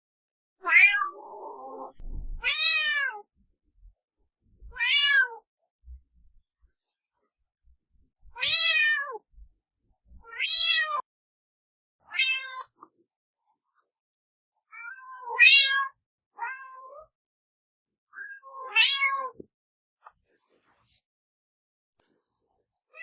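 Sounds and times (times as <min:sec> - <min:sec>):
cat meowing: 0:00.6 - 0:03.3, 0:04.7 - 0:05.4, 0:08.3 - 0:09.2, 0:10.2 - 0:11.0, 0:12.1 - 0:12.7, 0:14.7 - 0:17.1, 0:18.2 - 0:19.4.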